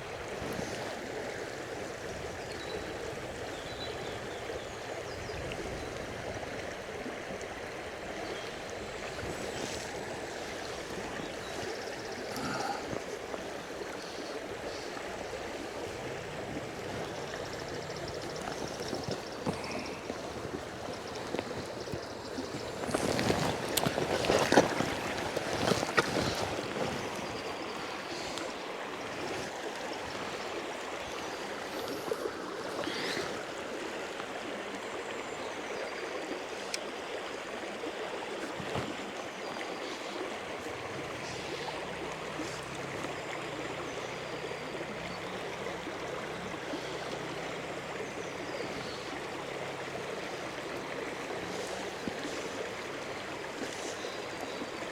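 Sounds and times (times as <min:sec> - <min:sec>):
river rushing: 0:06.5 - 0:54.9
person wading and splashing: 0:16.3 - 0:34.6, 0:49.9 - 0:54.8.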